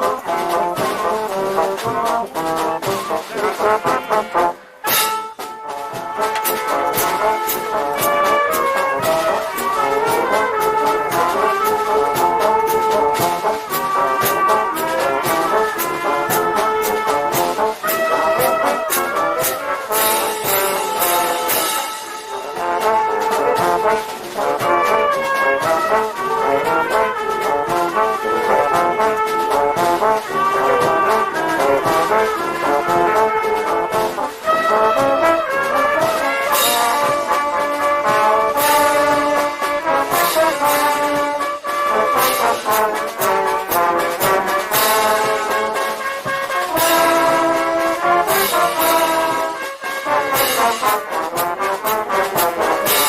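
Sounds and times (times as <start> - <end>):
percussion strokes: 0.0 - 53.0
trombones and trumpets: 0.0 - 53.0
wind band playing a march: 0.0 - 53.0.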